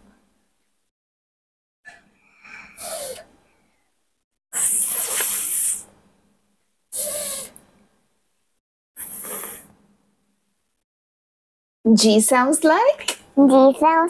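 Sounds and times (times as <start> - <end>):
person hissing f sound: 2.7 - 3.3, 4.6 - 5.9, 6.9 - 7.6, 9.0 - 9.7.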